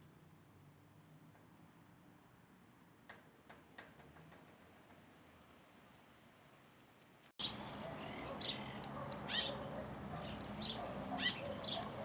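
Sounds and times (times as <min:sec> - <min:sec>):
birds chirping: 0:07.4 - 0:12.0.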